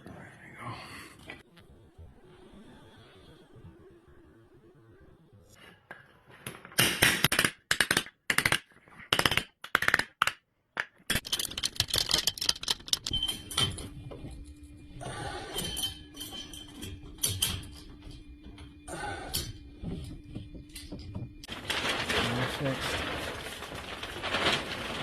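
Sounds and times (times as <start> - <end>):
rapid metallic clicking: 11.1 - 13.8.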